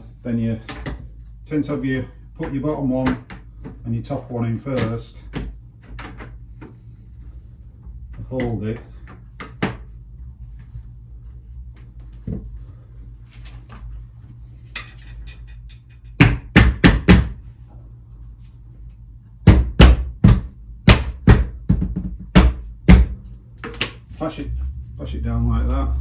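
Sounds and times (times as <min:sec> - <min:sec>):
knocks on plastic door frame: 0:19.5 - 0:23.2.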